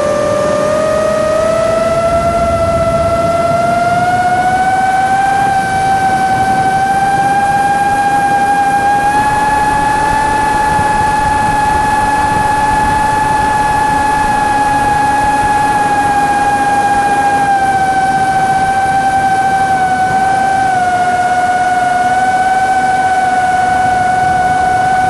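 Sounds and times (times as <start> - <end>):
motor whining: 0.0 - 25.0
rushing noise: 1.6 - 19.0.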